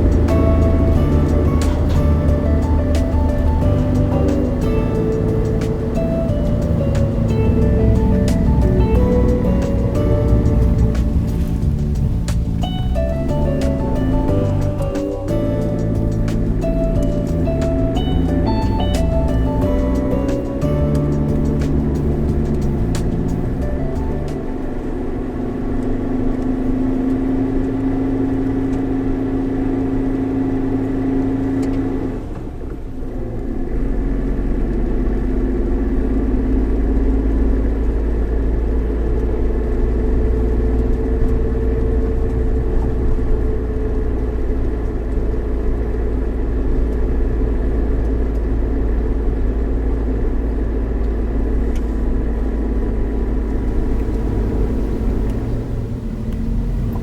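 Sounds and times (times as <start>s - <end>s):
car engine running: 0.0s - 25.7s, 53.1s - 57.0s.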